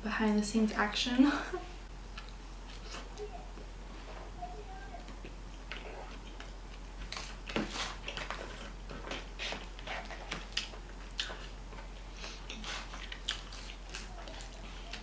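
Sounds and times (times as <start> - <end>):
low steady hum: 0.0 - 15.0
close-miked chewing and biting: 8.0 - 11.6, 12.4 - 15.0.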